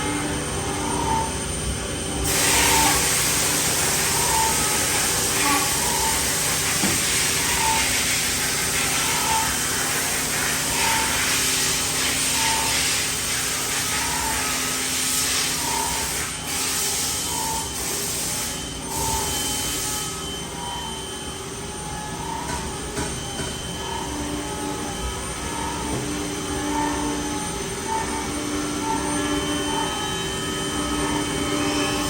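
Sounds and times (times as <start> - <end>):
machine steady hums: 0.0 - 32.0
machine steady hiss: 2.2 - 20.6.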